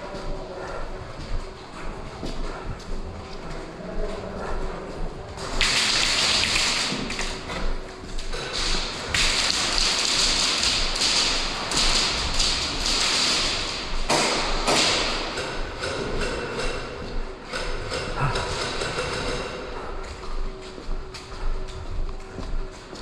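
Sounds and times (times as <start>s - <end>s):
airsoft guns firing bursts: 5.4s - 7.4s, 8.4s - 16.6s.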